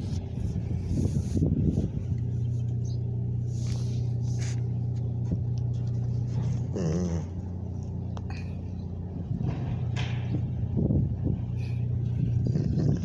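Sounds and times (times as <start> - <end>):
engine hum: 0.0 - 13.0
dog whining: 6.4 - 7.5, 12.4 - 13.0.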